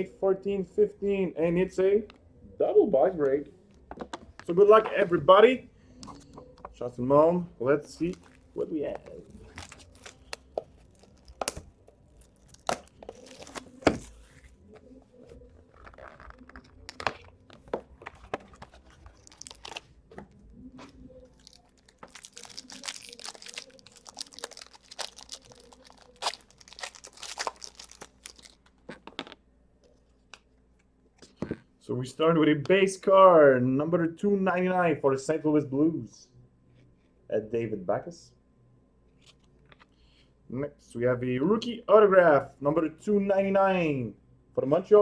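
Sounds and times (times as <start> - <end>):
wrapping torn and crinkled: 7.9 - 29.0.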